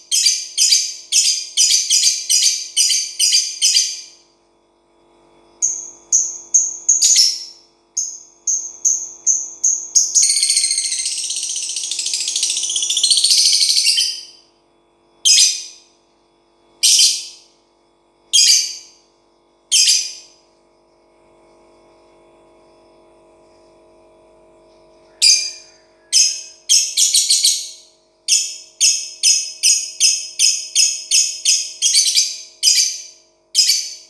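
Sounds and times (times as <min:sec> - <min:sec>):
lovebird chirping and trilling: 0:00.1 - 0:04.1, 0:05.6 - 0:14.4, 0:15.3 - 0:15.8, 0:16.8 - 0:17.4, 0:18.4 - 0:18.9, 0:19.7 - 0:20.2, 0:25.2 - 0:34.0.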